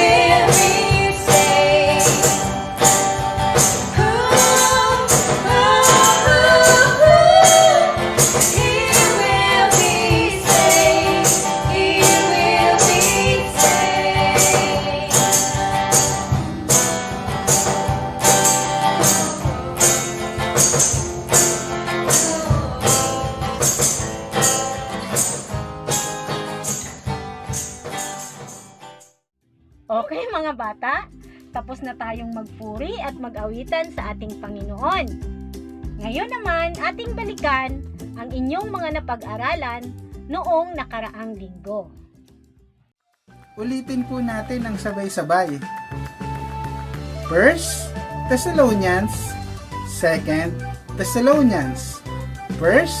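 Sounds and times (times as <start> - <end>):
gospel singing with guitar: 0.0 - 25.3
tambourine beat: 0.0 - 29.2.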